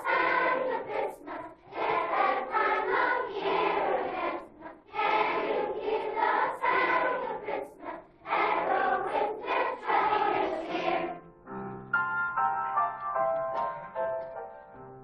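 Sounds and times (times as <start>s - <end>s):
children's choir singing: 0.0s - 11.6s.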